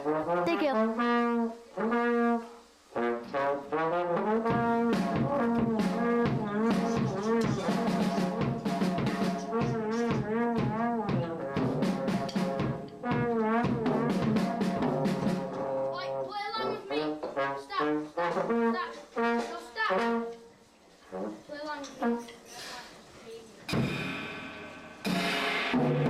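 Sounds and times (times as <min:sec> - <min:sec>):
brass instrument melody: 0:00.0 - 0:22.4, 0:23.8 - 0:26.0
drum hits: 0:04.4 - 0:15.8, 0:23.7 - 0:26.0.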